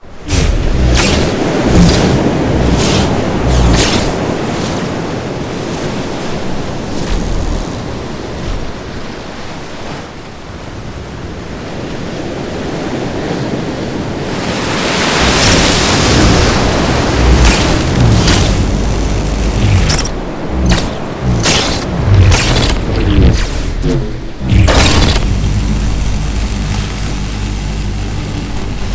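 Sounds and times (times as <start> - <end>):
short sharp sweeps: 0.0 - 9.2
noise ambience: 0.0 - 10.0, 14.4 - 28.9.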